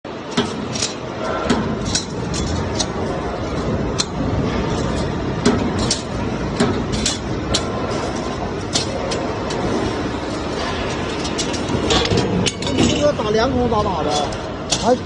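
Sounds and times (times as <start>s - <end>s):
metallic clanks and knocks: 0.1s - 9.8s, 10.6s - 15.0s.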